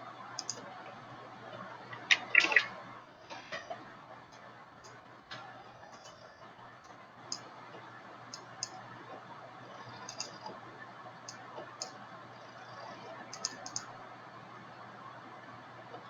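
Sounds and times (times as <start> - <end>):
computer mouse clicks: 0.4 - 0.7, 9.8 - 10.6, 11.3 - 12.0, 13.3 - 13.9.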